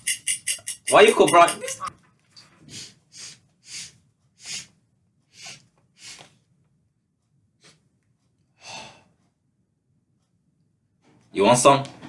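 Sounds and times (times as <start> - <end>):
man sniffing hard: 2.6 - 6.3.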